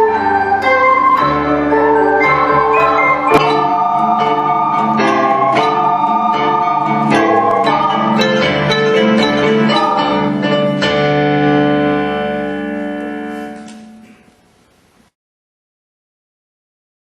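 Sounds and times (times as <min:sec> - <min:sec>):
instrumental music chords: 0:00.0 - 0:14.0.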